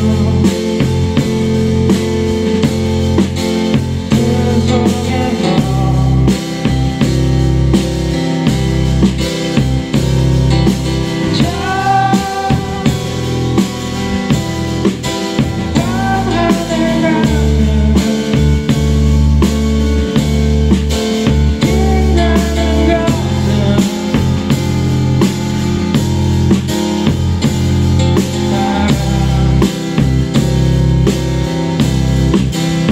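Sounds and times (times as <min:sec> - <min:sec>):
person singing: 0:00.0 - 0:02.7, 0:04.0 - 0:06.8, 0:11.2 - 0:14.4, 0:15.2 - 0:19.0, 0:21.3 - 0:24.7, 0:28.2 - 0:30.3
rock band music: 0:00.0 - 0:32.9.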